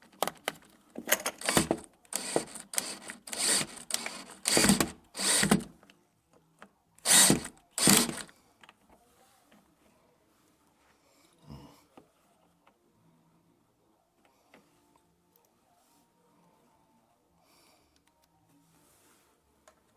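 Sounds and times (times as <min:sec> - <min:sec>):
power drill driving screws: 0:01.3 - 0:05.7, 0:07.0 - 0:08.3.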